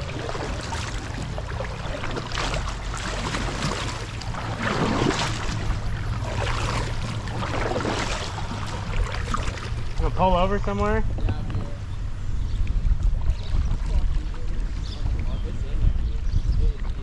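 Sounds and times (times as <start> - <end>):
paddle strokes splashing in water: 0.0 - 10.2
wind rumble on microphone: 0.0 - 17.0.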